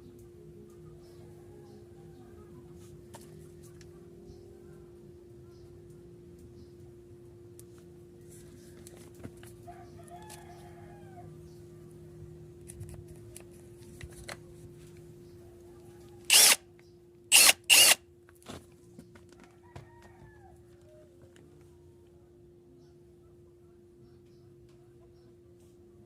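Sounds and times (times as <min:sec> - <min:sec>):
faint steady hum: 0:00.0 - 0:26.0
cordless drill bursts: 0:16.3 - 0:16.6, 0:17.3 - 0:18.0.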